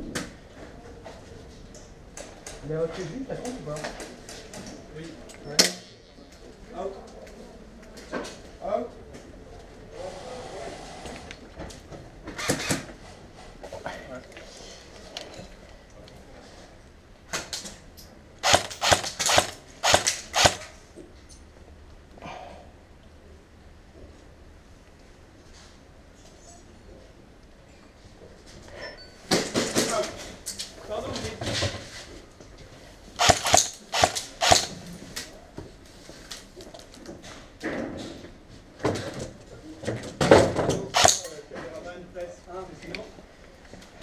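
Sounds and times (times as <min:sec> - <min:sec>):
airsoft gun shots: 0:18.4 - 0:20.7, 0:33.2 - 0:34.8, 0:41.0 - 0:41.3.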